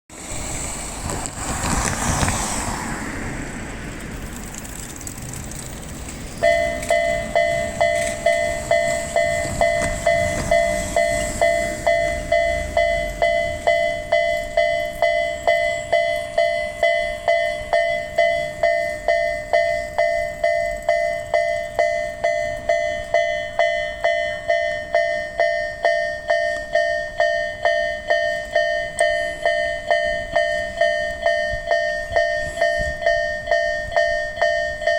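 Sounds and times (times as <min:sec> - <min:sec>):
broad rushing noise: 0:00.1 - 0:17.3
level-crossing warning bell: 0:05.8 - 0:34.9.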